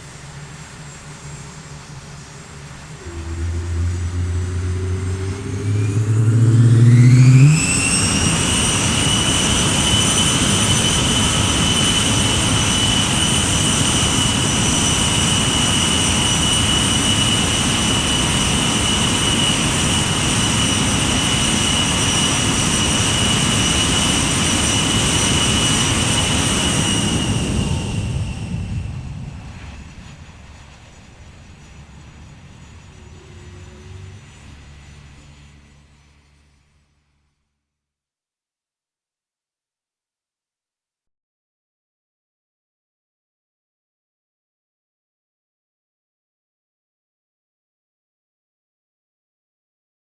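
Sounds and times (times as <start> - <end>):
high-pitched jet whine: 0.0 - 37.0
jet engine starting up: 0.0 - 37.0.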